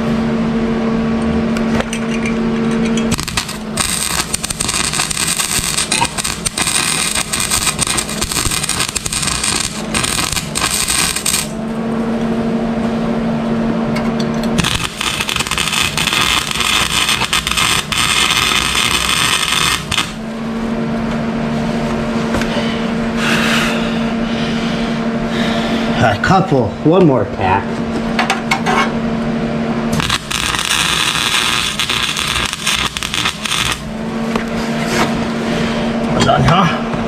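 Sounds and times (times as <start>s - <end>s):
steady hum: 0.0s - 37.0s
welding arc crackling: 3.1s - 11.6s, 14.6s - 20.3s, 29.9s - 34.5s.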